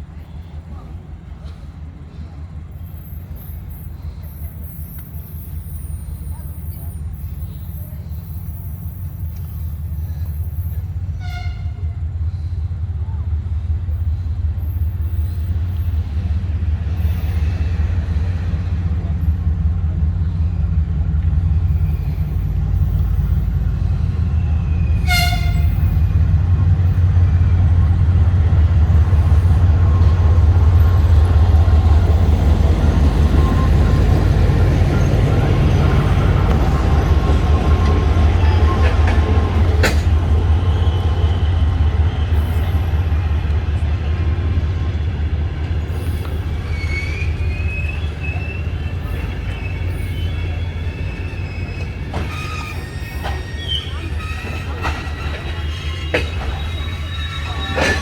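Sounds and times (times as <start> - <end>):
diesel locomotive engine rumbling: 0.0 - 58.0
rail noise: 0.0 - 58.0
train horn toot: 11.1 - 12.1, 24.6 - 26.2.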